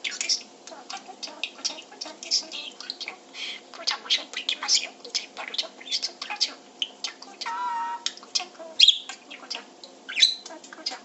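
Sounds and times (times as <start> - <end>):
parakeets chirping: 0.0 - 11.0.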